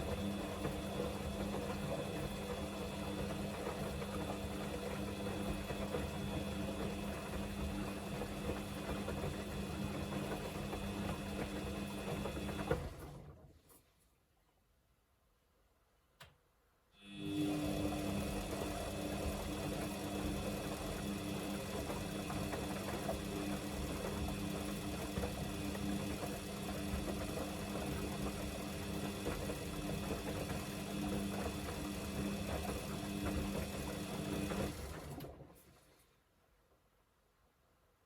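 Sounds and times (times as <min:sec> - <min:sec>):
washing machine drum motor humming: 0:00.0 - 0:13.1, 0:17.2 - 0:35.4.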